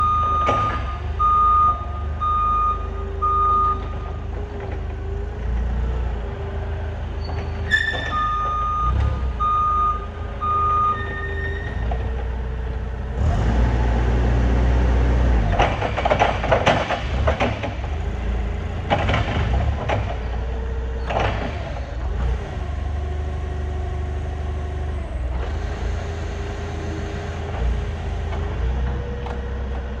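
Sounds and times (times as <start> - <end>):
reversing alarm beeping: 0.0 - 4.2, 8.0 - 11.5
forklift engine running: 0.0 - 30.0.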